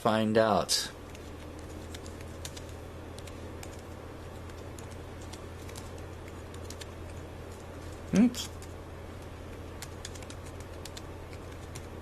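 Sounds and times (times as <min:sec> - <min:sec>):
steady low hum: 0:00.0 - 0:12.0
keyboard typing clicks: 0:01.1 - 0:03.8, 0:04.4 - 0:07.6, 0:09.8 - 0:11.9.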